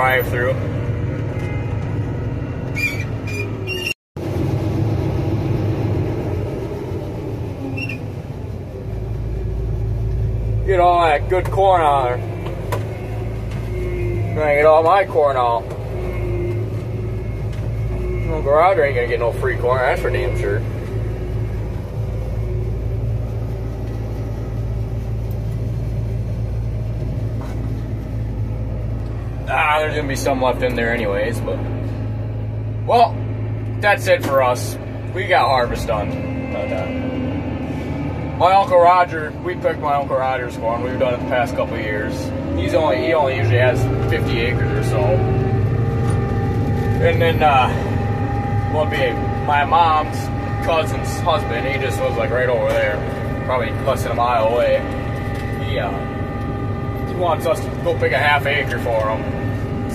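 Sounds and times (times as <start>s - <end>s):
combine harvester running: 0.0s - 59.9s
short high squeaks: 2.7s - 4.0s, 7.6s - 8.2s.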